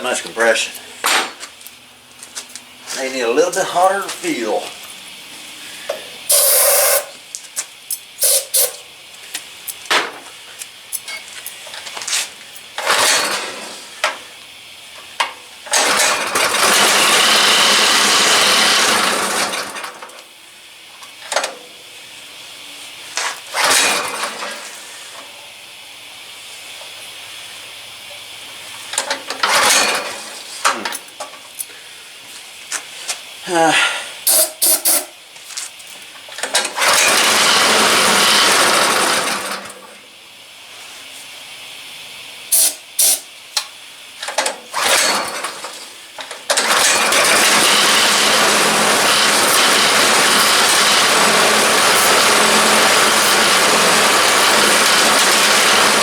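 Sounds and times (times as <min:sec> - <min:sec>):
aerosol can spraying: 0:06.3 - 0:07.1, 0:08.2 - 0:08.8, 0:34.3 - 0:35.0, 0:51.6 - 0:53.6.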